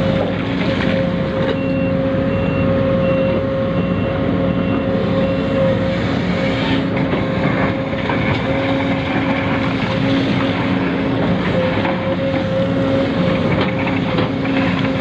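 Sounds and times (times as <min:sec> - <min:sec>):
model truck whine: 0:00.0 - 0:15.0
reversing beeper: 0:01.6 - 0:05.7.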